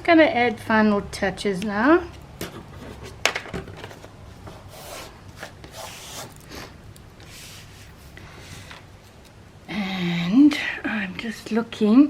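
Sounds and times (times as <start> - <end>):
paper rustling and rubbing: 3.8 - 6.6, 7.2 - 8.9.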